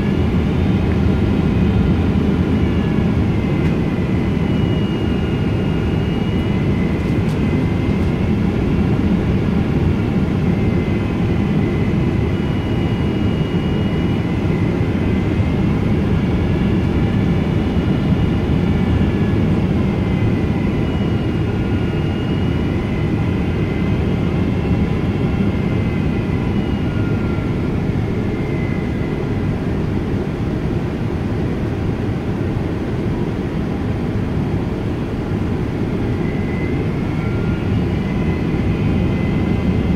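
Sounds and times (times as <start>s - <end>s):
airliner cabin rumble: 0.0s - 39.9s
jet engine whine: 0.0s - 39.9s.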